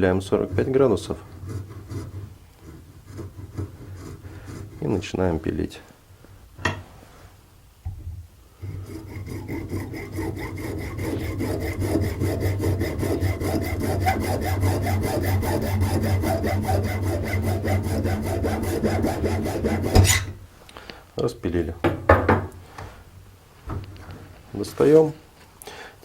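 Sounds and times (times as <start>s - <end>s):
hacksaw cutting metal: 8.6s - 20.3s.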